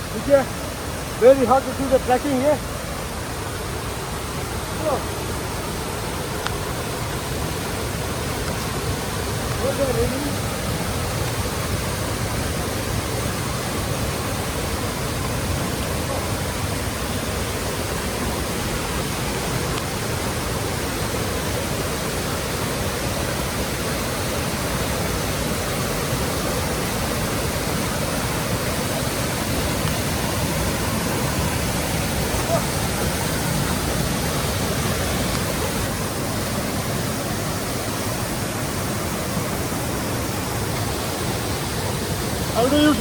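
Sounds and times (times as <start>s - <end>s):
river water rushing: 0.0s - 43.0s.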